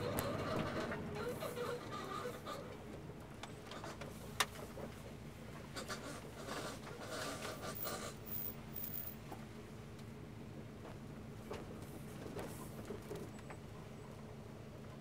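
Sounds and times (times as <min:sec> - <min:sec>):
wheel scraping and rubbing: 0:00.0 - 0:02.8, 0:05.6 - 0:08.5.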